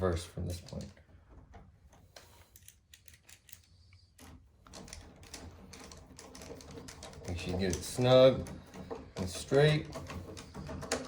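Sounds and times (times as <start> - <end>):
screwdriver turning screws: 2.5 - 11.0.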